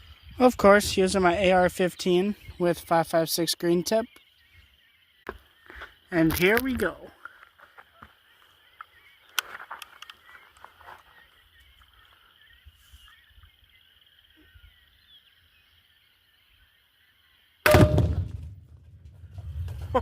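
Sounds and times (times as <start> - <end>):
explosion boom: 17.7 - 20.0.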